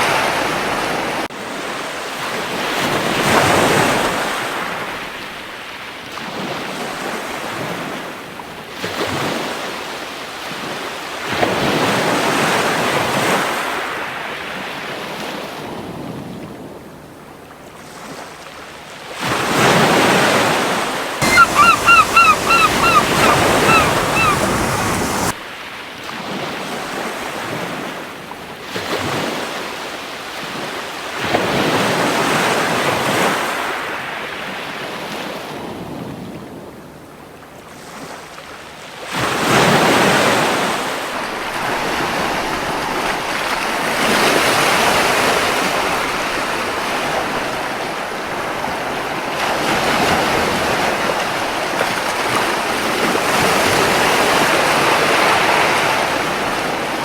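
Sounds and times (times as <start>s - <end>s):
seagull calls: 21.2s - 25.3s
ocean surf breaking on beach: 21.2s - 25.4s.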